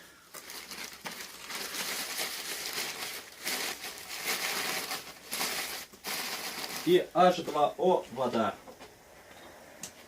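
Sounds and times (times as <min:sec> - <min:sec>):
bag rustling and crinkling: 0:00.3 - 0:07.0.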